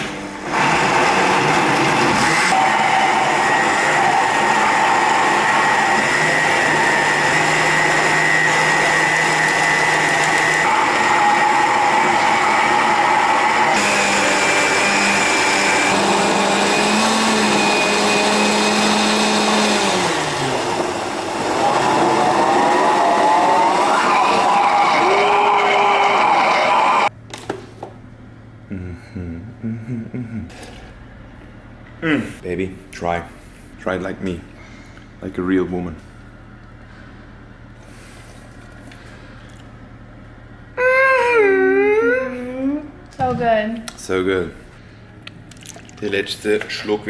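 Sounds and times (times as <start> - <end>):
blender motor running: 0.4 - 27.1.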